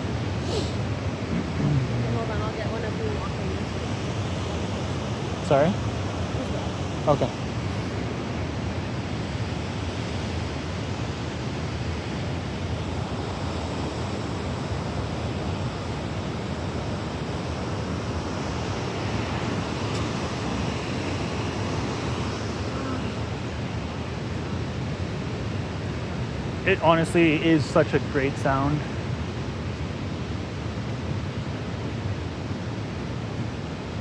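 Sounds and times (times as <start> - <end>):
water rushing: 0.0 - 9.1.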